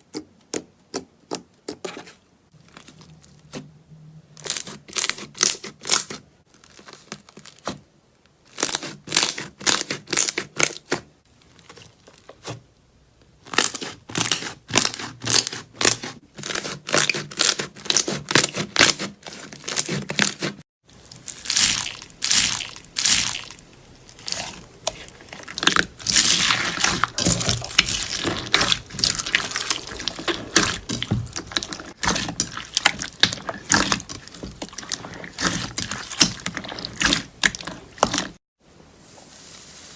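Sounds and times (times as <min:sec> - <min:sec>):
slime crackling and squishing: 0:02.5 - 0:03.6, 0:13.4 - 0:38.4.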